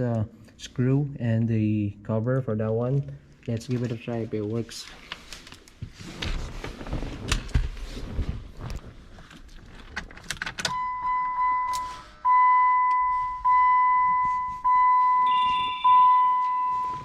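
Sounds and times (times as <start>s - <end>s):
car warning chime dinging: 10.7s - 17.0s.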